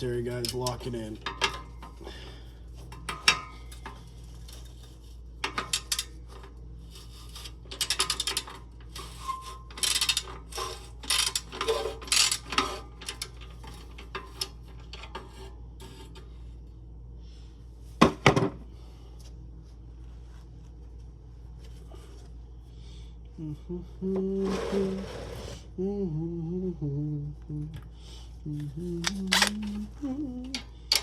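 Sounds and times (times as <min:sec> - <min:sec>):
ratchet wrench clicking: 0:09.8 - 0:12.5.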